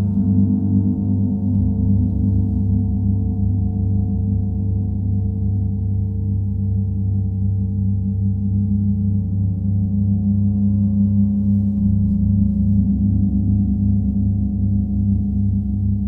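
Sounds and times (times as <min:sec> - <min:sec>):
gong ringing with low hum: 0:00.0 - 0:05.1.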